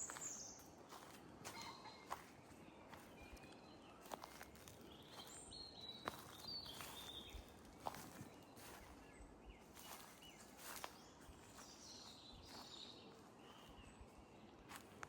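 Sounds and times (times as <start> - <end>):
faint bird chirps: 0.0 - 14.9
soft footsteps: 6.0 - 9.0.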